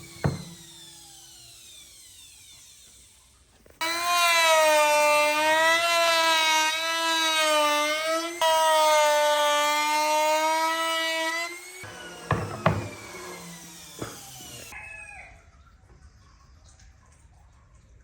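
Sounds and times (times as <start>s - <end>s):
power tool motor whining: 0.0s - 14.8s.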